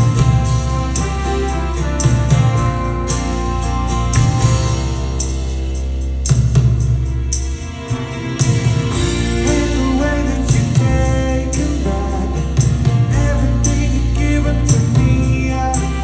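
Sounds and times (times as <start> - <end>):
live rock band playing: 0.0 - 16.0
person singing lead vocal: 9.4 - 16.0.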